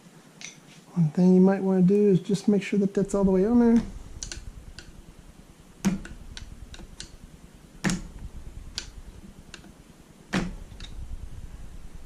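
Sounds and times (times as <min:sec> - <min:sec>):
light clicks and ticks: 0:03.7 - 0:05.0, 0:07.8 - 0:11.0
bicycle parts knocking: 0:05.8 - 0:07.2, 0:07.8 - 0:11.0.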